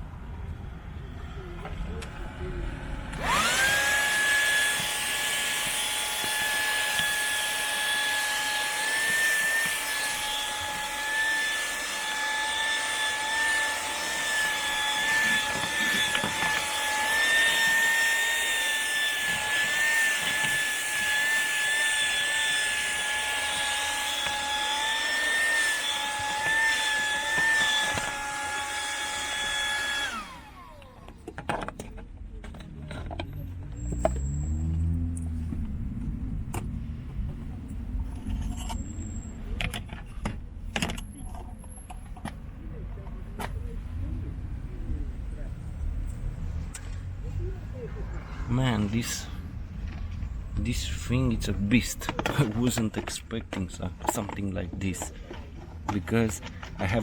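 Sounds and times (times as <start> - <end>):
car vacuum cleaner whining: 1.0 - 43.5, 46.1 - 57.0.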